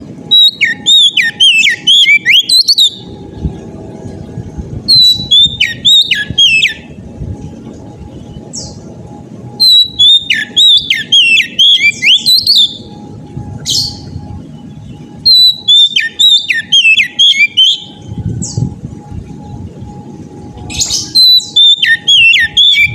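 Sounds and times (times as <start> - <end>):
bird singing whistled notes: 0.3 - 3.3, 4.9 - 6.9, 8.1 - 8.9, 9.5 - 18.8, 20.6 - 22.9.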